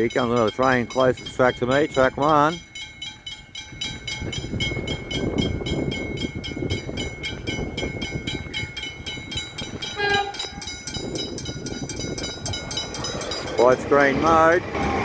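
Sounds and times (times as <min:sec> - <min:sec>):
level-crossing bells ringing: 0:00.0 - 0:15.0
train rumbling past: 0:00.0 - 0:15.0
train horn toot: 0:09.8 - 0:10.6.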